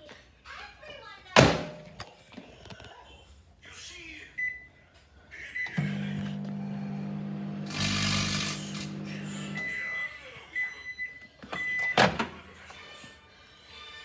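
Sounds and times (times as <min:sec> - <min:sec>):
microwave oven humming: 0:05.7 - 0:09.9.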